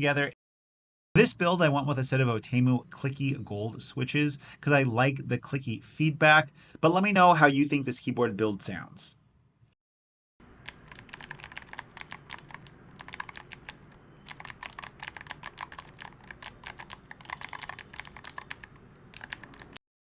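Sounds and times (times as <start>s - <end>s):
mechanical keyboard key clicks: 10.6s - 19.8s.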